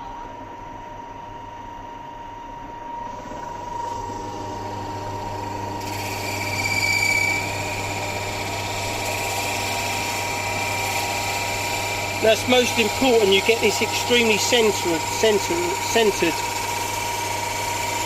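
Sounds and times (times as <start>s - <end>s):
drill bit cutting whine: 3.7s - 18.0s
drill motor humming: 3.9s - 18.0s.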